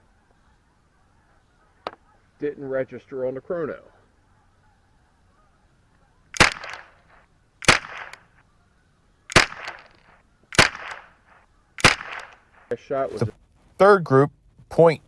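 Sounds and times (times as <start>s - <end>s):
rifle shots: 6.4s - 8.3s, 9.3s - 12.7s.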